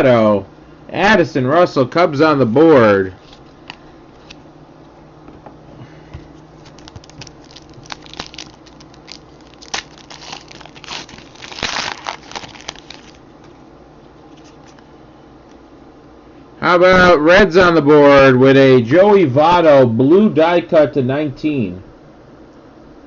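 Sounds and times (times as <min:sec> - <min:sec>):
faint steady hum: 0:00.0 - 0:23.0
trading cards crinkling: 0:06.6 - 0:13.6, 0:14.3 - 0:14.9.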